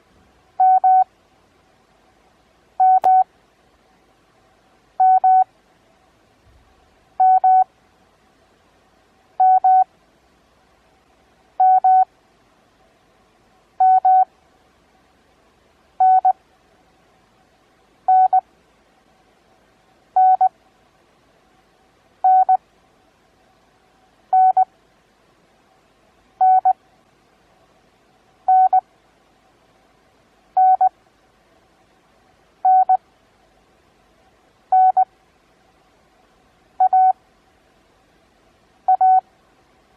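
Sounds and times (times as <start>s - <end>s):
morse code beeps: 0.6s - 1.1s, 2.8s - 3.3s, 5.0s - 5.5s, 7.2s - 7.7s, 9.4s - 9.8s, 11.6s - 12.1s, 13.8s - 14.3s, 16.0s - 16.4s, 18.1s - 18.4s, 20.2s - 20.5s, 22.2s - 22.6s, 24.3s - 24.7s, 26.4s - 26.8s, 28.5s - 28.8s, 30.6s - 30.9s, 32.6s - 33.0s, 34.7s - 35.1s, 36.8s - 37.2s, 38.9s - 39.2s.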